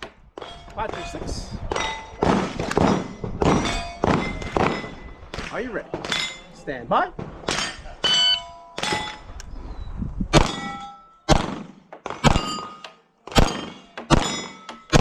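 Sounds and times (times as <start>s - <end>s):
steel target clanging: 0.4s - 6.5s, 7.5s - 9.3s, 10.4s - 11.2s, 12.1s - 15.0s
pistol shots: 10.4s - 10.7s, 11.3s - 12.7s, 13.3s - 15.0s.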